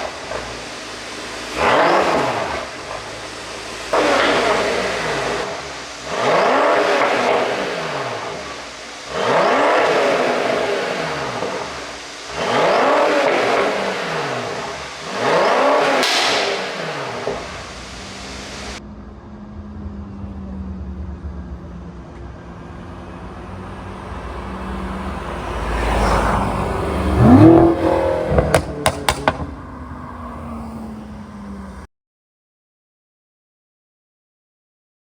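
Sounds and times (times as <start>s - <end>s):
car engine revving and idling: 0.0s - 31.9s
exhaust pops and crackles: 26.8s - 29.9s.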